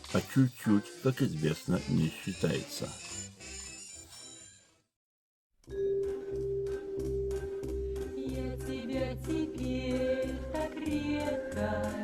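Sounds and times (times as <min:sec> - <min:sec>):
recorded music: 0:00.0 - 0:03.0, 0:05.8 - 0:12.0.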